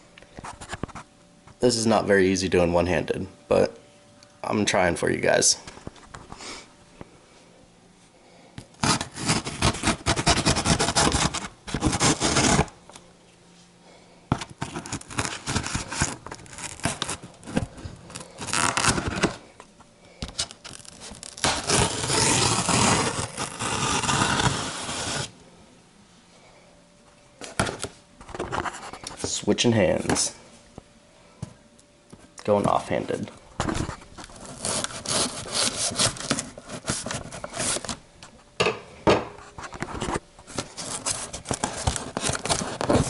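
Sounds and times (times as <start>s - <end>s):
knife cutting tape and cardboard: 8.8s - 12.7s, 20.8s - 25.3s, 34.3s - 37.9s.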